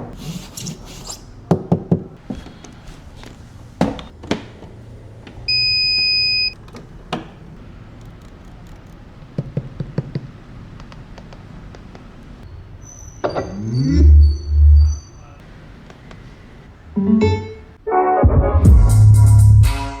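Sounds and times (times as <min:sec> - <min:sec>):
handling clicks and knocks: 0:01.5 - 0:12.5
electronic beep: 0:05.5 - 0:06.6
quick taps: 0:08.1 - 0:12.5.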